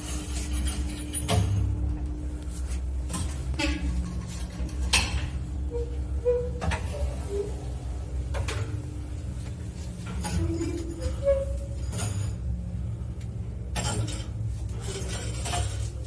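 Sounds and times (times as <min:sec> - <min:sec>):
lift running low rumble: 0:01.8 - 0:13.8
guide rails squeaking: 0:03.2 - 0:08.2, 0:09.9 - 0:13.0.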